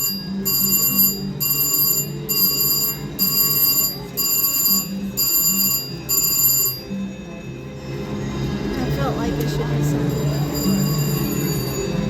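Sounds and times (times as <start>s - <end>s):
slot machine electronic ringing: 0.0s - 7.4s, 10.0s - 12.0s.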